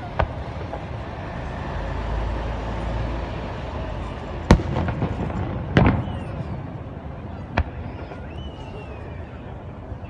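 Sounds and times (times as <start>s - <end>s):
firework bang: 0.0s - 1.5s, 4.4s - 8.6s
firework crackles: 0.0s - 10.0s.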